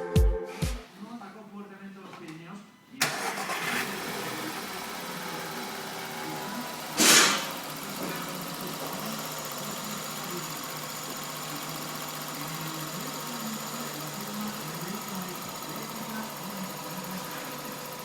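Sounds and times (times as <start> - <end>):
car engine idling: 0.8 - 18.0
short loud burst of noise: 7.0 - 7.6.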